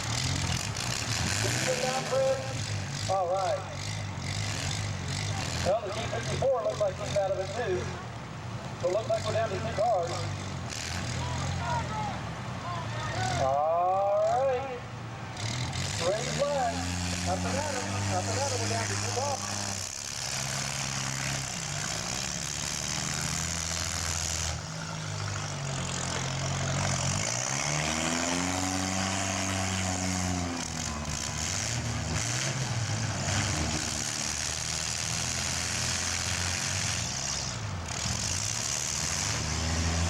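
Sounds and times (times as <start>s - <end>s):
car engines revving: 0.0s - 40.0s.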